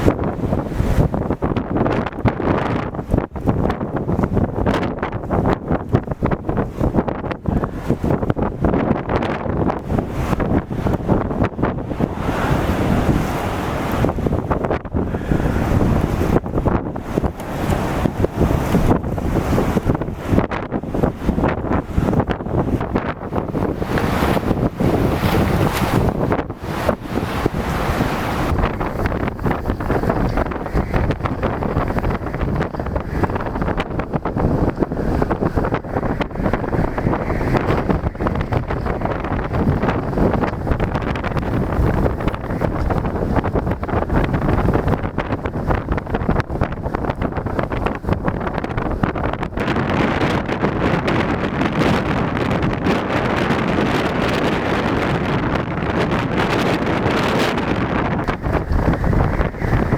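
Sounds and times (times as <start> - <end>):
faint sea surf: 0.0 - 59.9
strong wind buffeting microphone: 0.0 - 59.9.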